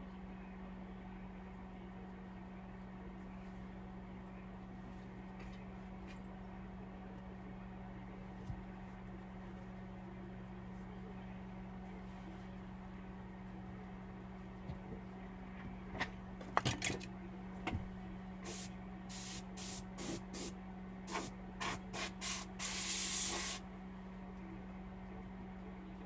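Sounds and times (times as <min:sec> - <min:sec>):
compressed air spray hissing: 0:18.4 - 0:20.5, 0:21.1 - 0:23.6.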